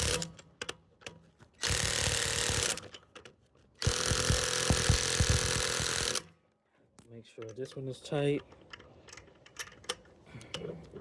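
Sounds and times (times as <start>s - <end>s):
impact wrench hammering: 1.6s - 3.0s, 3.8s - 6.3s.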